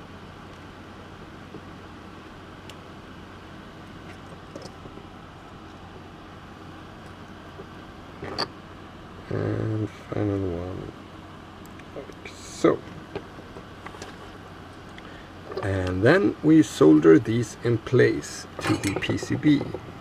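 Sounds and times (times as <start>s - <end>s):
low mains hum: 0.0s - 20.0s
faint ticks of electronic parts: 2.6s - 2.8s
click and rustle: 12.9s - 16.0s.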